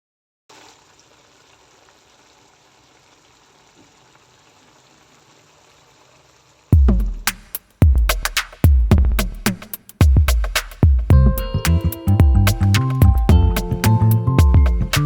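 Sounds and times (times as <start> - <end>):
food sizzling in a pan: 0.5 - 6.8.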